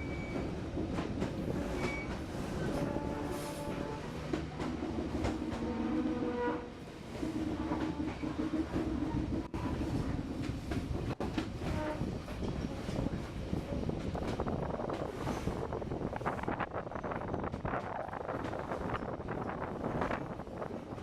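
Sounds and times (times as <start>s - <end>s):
train running on track: 0.0s - 21.0s
long held horn tone: 1.5s - 4.1s, 5.6s - 6.7s.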